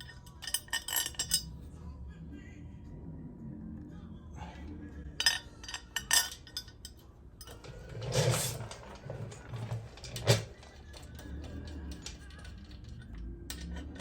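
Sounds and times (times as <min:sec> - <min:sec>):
metal parts clinking: 0:00.0 - 0:01.5, 0:05.2 - 0:08.7, 0:11.9 - 0:14.0.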